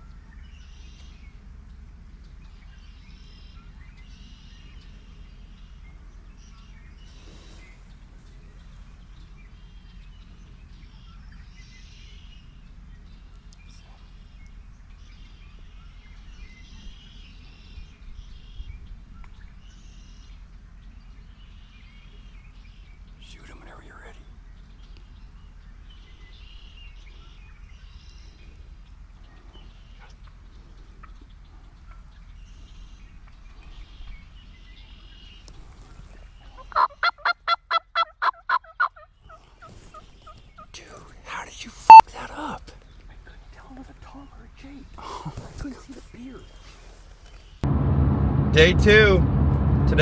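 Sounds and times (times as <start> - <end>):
low outdoor background rumble: 0.0 - 37.3, 47.5 - 50.0
songbirds chirping and singing: 0.0 - 47.6
wild turkey gobbling: 36.5 - 40.7, 41.9 - 42.1.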